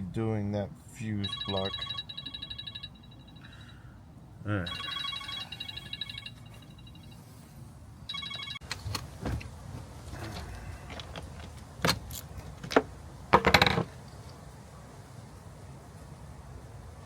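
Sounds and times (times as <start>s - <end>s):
pulsing electronic ring: 1.2s - 3.8s, 4.7s - 7.4s, 8.1s - 8.6s.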